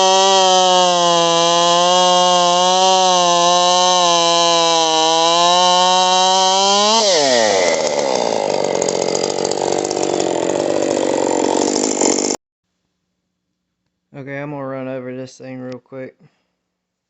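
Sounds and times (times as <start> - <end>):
chainsaw cutting wood: 0.0 - 12.4.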